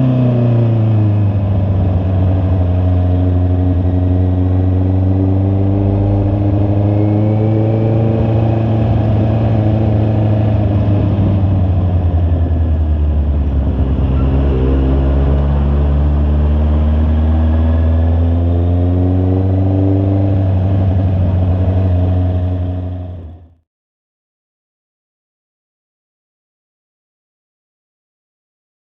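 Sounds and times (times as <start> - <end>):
motorcycle engine running: 0.0 - 23.6.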